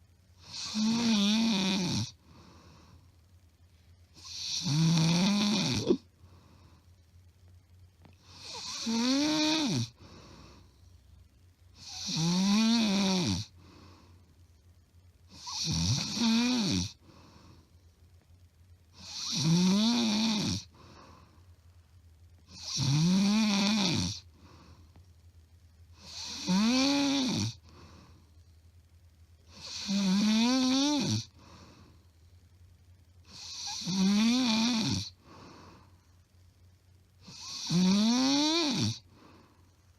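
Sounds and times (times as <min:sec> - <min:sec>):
woman snoring loudly: 0:00.4 - 0:02.2, 0:04.2 - 0:06.0, 0:08.3 - 0:10.0, 0:11.8 - 0:13.5, 0:15.4 - 0:17.0, 0:19.0 - 0:20.7, 0:22.5 - 0:24.2, 0:26.0 - 0:27.6, 0:29.6 - 0:31.3, 0:33.3 - 0:35.2, 0:37.3 - 0:39.1.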